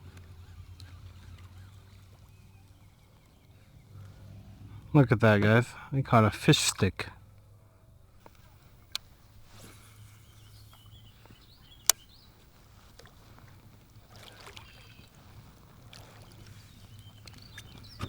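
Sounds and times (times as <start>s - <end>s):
faint bird chirps: 0.0s - 4.3s, 10.0s - 12.4s, 14.5s - 15.2s, 16.6s - 18.0s
water splashing around kayak hull: 9.4s - 18.0s.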